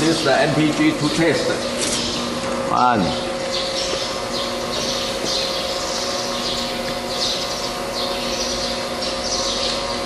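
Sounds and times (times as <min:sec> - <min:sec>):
machine motor hum: 0:00.0 - 0:10.0
rhythmic hiss of machine strokes: 0:00.0 - 0:10.0.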